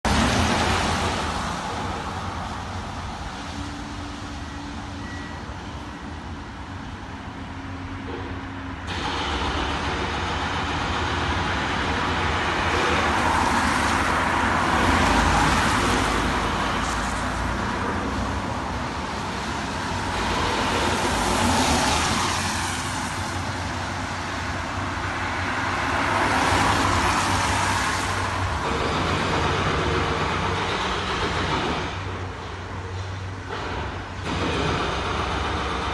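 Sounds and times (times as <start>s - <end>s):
loud noisy machine sound: 8.1s - 17.9s, 26.4s - 32.7s, 33.5s - 35.9s.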